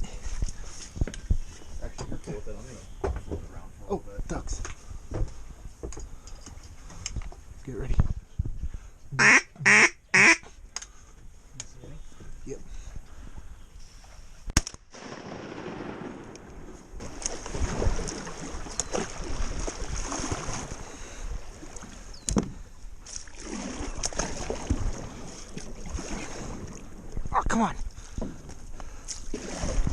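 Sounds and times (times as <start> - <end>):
shotgun blast: 14.6 - 16.4
water sloshing: 15.2 - 29.9.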